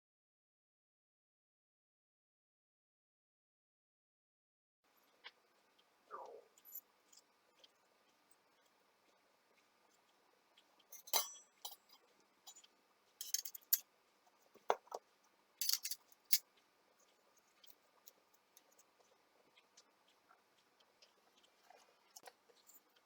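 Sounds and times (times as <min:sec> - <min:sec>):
small metal parts clinking: 0:10.9 - 0:13.9, 0:15.6 - 0:16.5.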